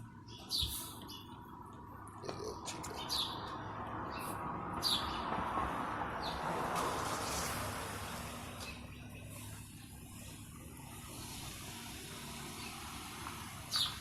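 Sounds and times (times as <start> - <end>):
small bird chirping: 0.2 - 1.4, 13.6 - 14.0.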